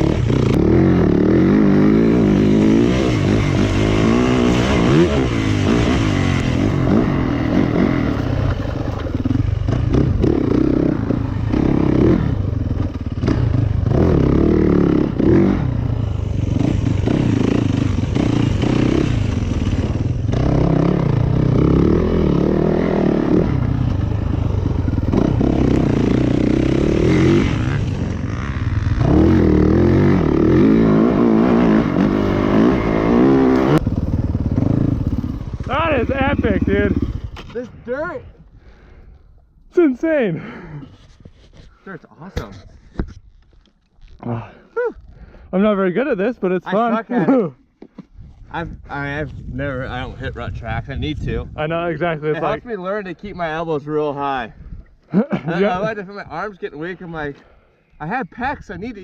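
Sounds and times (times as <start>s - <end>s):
dirt bike engine revving: 0.0s - 37.5s.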